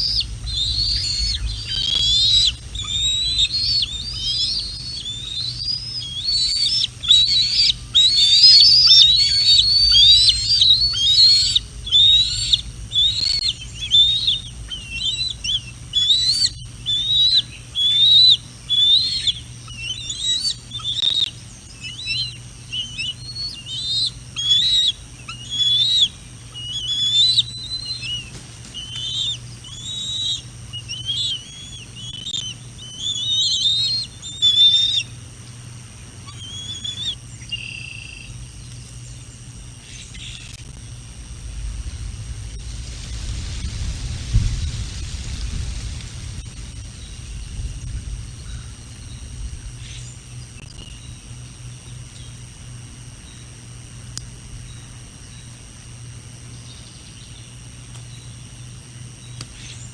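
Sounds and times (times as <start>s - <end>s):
young eagle whistled calls: 0.0s - 35.2s, 36.2s - 38.4s.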